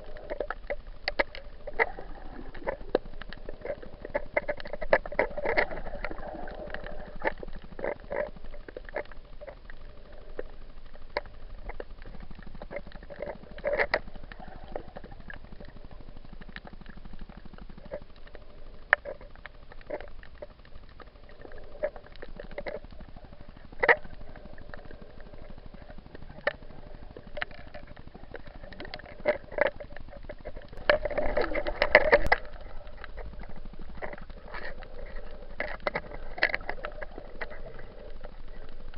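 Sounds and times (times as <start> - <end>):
muffled hiss: 0.0 - 38.9
water sloshing against camera housing: 18.9 - 38.9.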